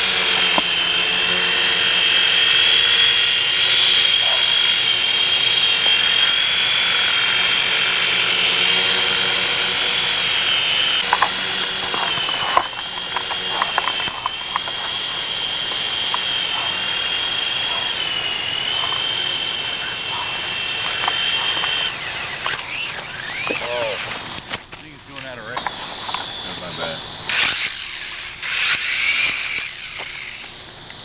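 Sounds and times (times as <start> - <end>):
rc helicopter rotors whining: 0.0 - 31.0
sharp clicks and knocks: 11.0 - 16.7.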